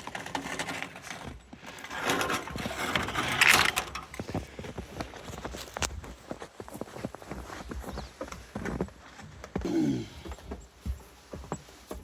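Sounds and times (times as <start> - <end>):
scraping: 0.0 - 4.5.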